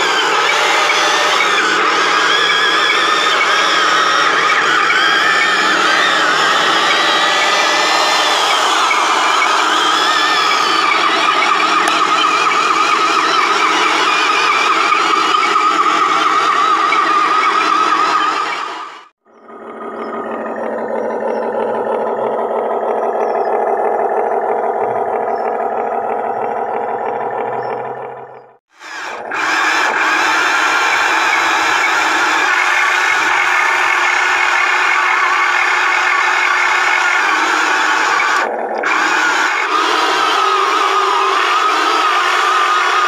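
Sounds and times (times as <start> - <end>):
toy excavator mechanical whine: 0.0 - 43.0.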